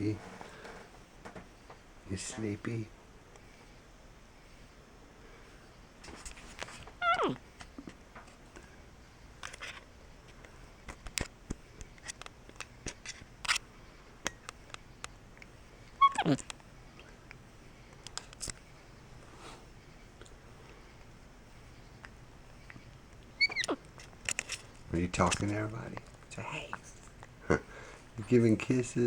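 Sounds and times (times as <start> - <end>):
faint clicks: 9.4 - 28.8
monkey calls falling in pitch: 16.0 - 16.4, 23.4 - 23.8.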